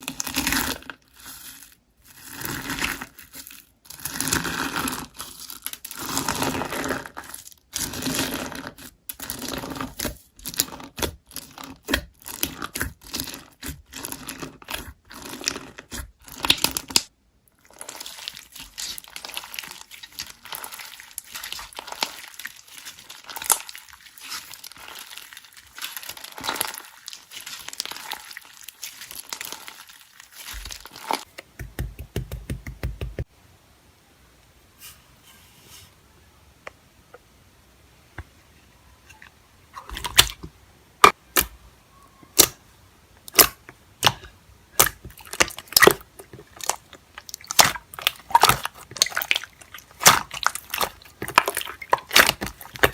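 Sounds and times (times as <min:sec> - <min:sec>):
slime squeezed crackling: 0:00.1 - 0:31.4, 0:42.2 - 0:42.6, 0:43.3 - 0:52.9.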